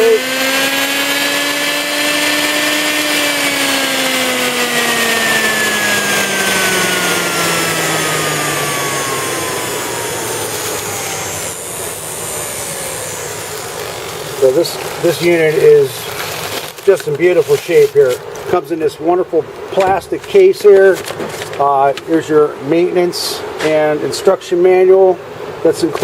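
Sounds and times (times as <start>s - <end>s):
electric motor whining down: 0.0s - 18.1s.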